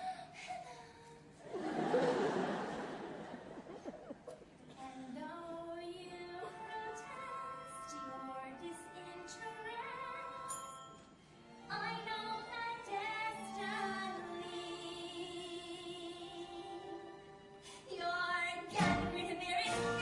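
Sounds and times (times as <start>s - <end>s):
woman singing: 4.7s - 10.8s, 11.6s - 17.2s, 17.8s - 20.0s
musical accompaniment: 6.1s - 20.0s.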